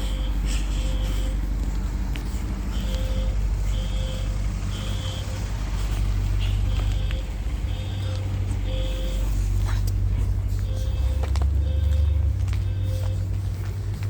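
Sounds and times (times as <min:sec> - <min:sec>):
fire alarm beeps: 0:00.0 - 0:01.4, 0:02.7 - 0:09.4, 0:10.5 - 0:13.4
steady low rumble: 0:00.0 - 0:14.0.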